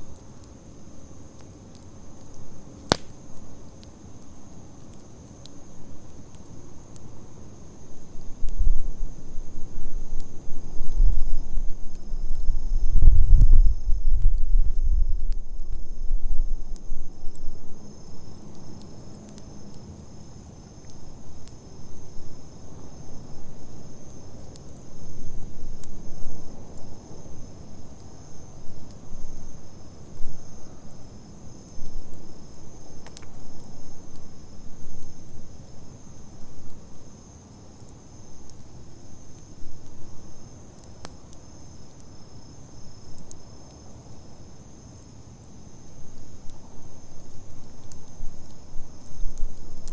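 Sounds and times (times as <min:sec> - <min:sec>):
campfire burning: 0:00.0 - 0:49.9
insects chirring: 0:00.0 - 0:49.9
wood popping: 0:02.9 - 0:03.2.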